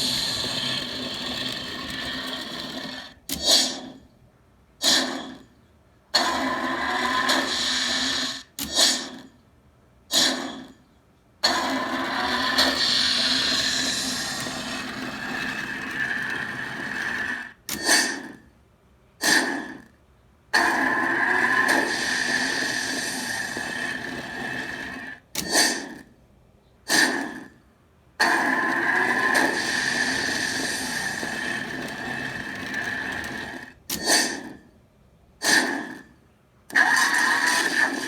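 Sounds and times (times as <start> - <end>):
motor-driven ring whirring: 0.0 - 4.0, 11.4 - 18.5, 20.6 - 26.1, 28.2 - 34.8.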